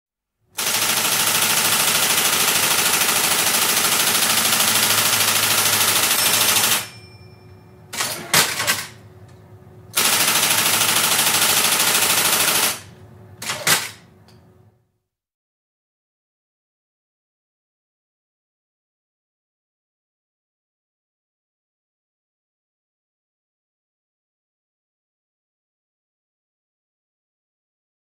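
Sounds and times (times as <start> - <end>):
typewriter clacks: 0.6 - 6.9, 10.0 - 12.8
typewriter key rapid strikes: 0.6 - 6.9, 10.0 - 12.8, 13.4 - 14.0
faint typewriter hum: 0.6 - 7.0, 7.9 - 14.5.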